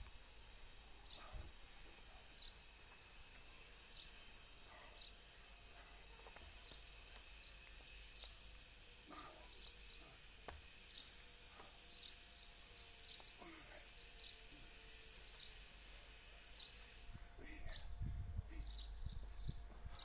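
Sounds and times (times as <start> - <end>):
bird chirping: 6.5 - 14.6.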